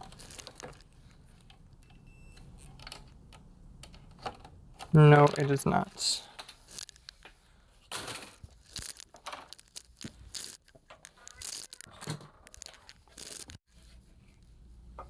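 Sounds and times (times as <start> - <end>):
scraping and rustling of parts: 0.0 - 1.6, 4.1 - 13.6.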